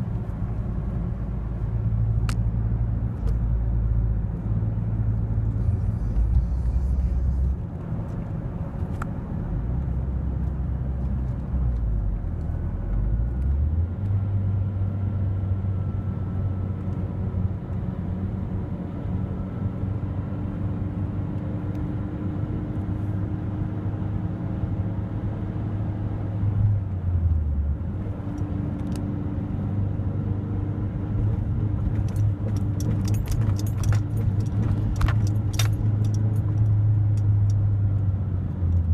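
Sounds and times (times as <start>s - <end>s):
car engine droning: 0.0s - 38.9s
clicks and rattles: 32.0s - 36.7s.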